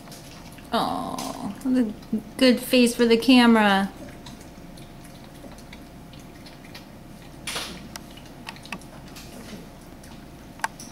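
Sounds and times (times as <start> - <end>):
dog chewing food: 3.9 - 10.9.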